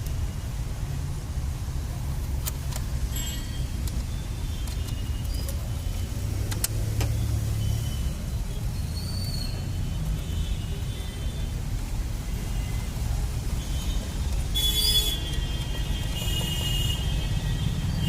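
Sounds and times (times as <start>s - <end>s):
motor vehicle rumble: 0.0s - 18.0s
sharp clicks: 6.4s - 7.2s.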